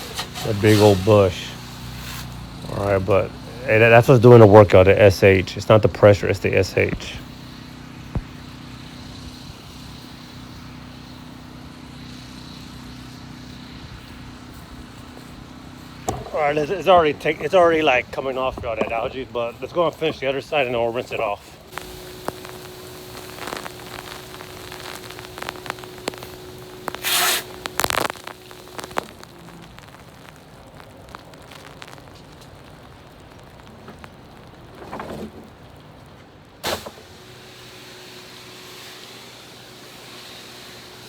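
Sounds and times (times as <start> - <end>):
pressure washer spraying water: 0.0 - 3.1, 20.0 - 29.1, 36.6 - 41.0
loud bumps: 16.0 - 17.6
steady hum: 21.5 - 32.0.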